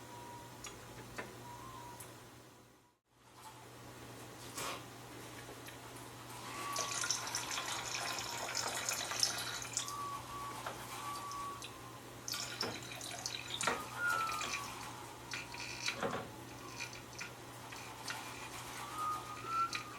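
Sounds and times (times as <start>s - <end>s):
water trickling and dripping: 6.5s - 10.2s, 11.2s - 18.8s.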